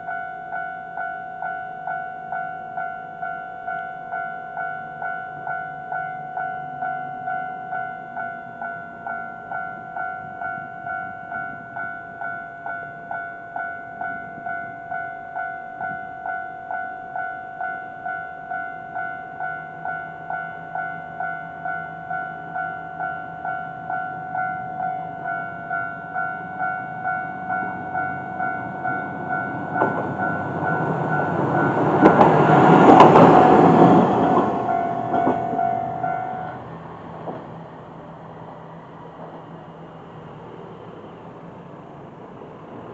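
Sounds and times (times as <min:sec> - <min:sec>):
level crossing warning bell: 0:00.0 - 0:36.7
diesel railcar passing: 0:00.0 - 0:42.9.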